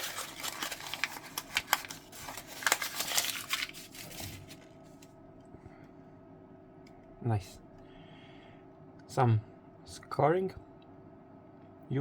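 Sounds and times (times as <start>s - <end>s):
packaging crinkling and tearing: 0.0s - 5.1s.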